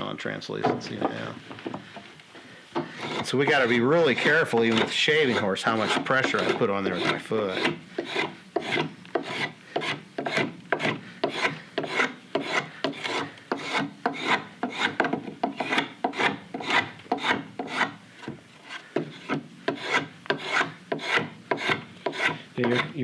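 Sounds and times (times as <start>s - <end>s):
blade shaving wood: 2.9s - 18.0s.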